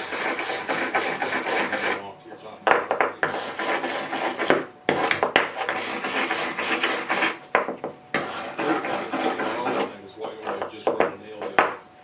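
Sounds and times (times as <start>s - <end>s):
hand scrubbing aluminum: 8.2s - 10.0s.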